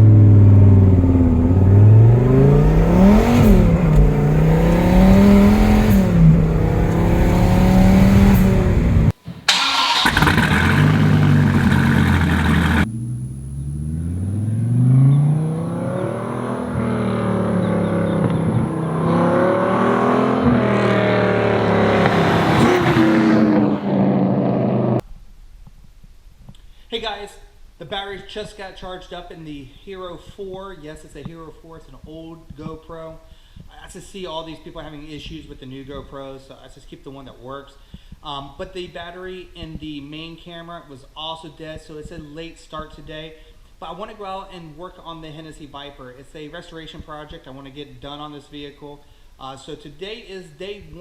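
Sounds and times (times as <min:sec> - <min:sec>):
car engine revving: 0:00.0 - 0:25.0.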